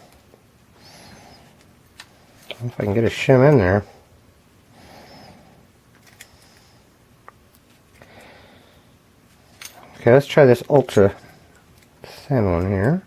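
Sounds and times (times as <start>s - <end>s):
soft breaths: 0.0s - 2.7s, 3.7s - 7.1s, 7.7s - 10.1s, 11.0s - 12.4s.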